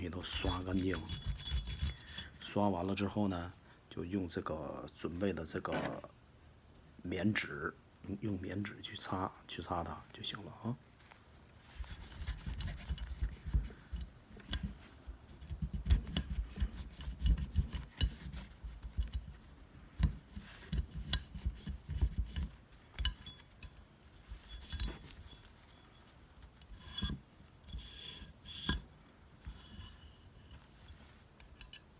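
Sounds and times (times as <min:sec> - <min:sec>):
cloth rubbing on pistol parts: 0:00.2 - 0:02.6, 0:11.0 - 0:31.5
light clicks of metal parts: 0:11.9 - 0:31.9.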